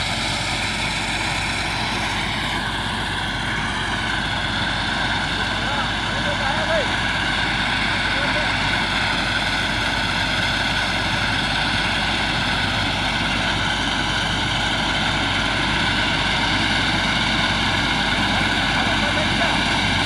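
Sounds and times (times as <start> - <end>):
combine harvester engine droning: 0.0 - 20.0.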